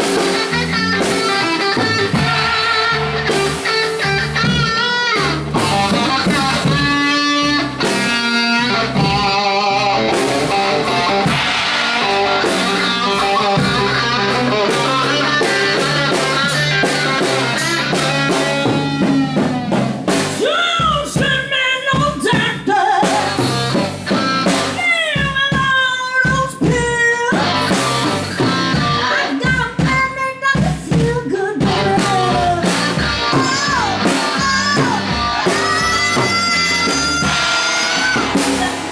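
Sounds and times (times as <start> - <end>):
guitar playing: 0.0 - 20.1, 27.4 - 29.4, 31.7 - 38.9
wavering lead guitar lines: 0.0 - 20.1, 27.4 - 29.4, 31.6 - 38.9
drum kit: 0.0 - 38.9.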